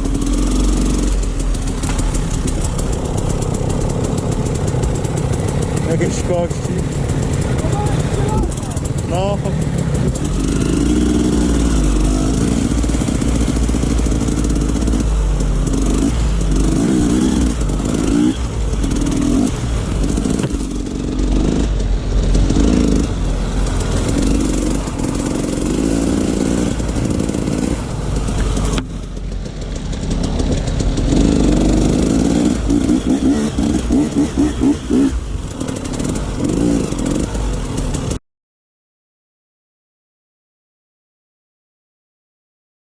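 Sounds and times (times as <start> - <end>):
steady low rumble: 0.0 - 33.1
dirt bike engine revving: 0.0 - 38.2.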